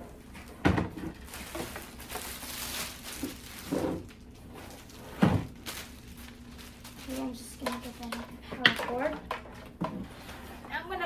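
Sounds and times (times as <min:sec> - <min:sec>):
plastic wrapping rustling: 0:00.4 - 0:09.1.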